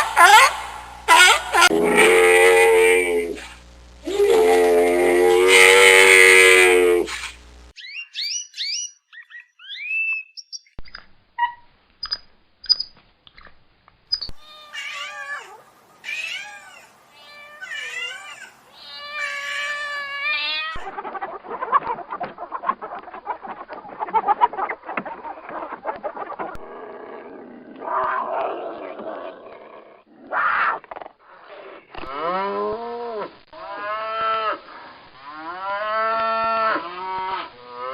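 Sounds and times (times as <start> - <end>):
dense rough noise: 0.0 - 7.7
short chirps and clicks: 9.9 - 14.4
cat meowing: 14.4 - 20.9.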